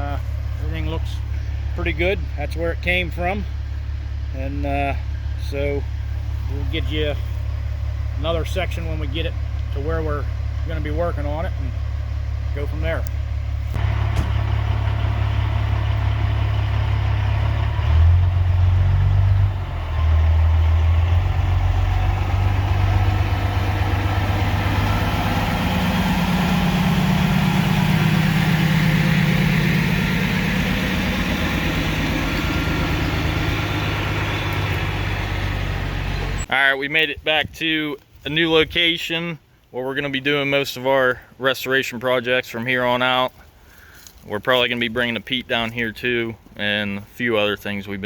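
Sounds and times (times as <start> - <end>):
higher engine drone: 0.0 - 36.5
vehicle engine drone: 0.0 - 36.6.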